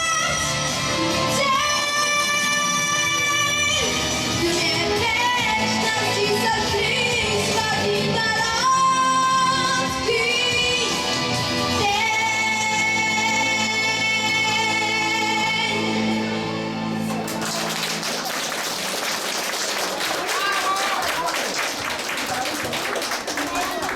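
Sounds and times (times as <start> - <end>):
boy singing pop ballad: 0.0 - 16.5
backing music: 0.0 - 19.9.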